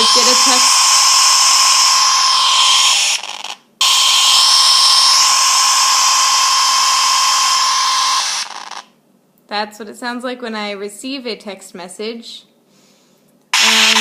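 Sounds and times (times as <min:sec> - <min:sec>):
steady high tone: 0:00.0 - 0:03.2
phone speaker static hiss: 0:00.0 - 0:04.2, 0:13.5 - 0:14.0.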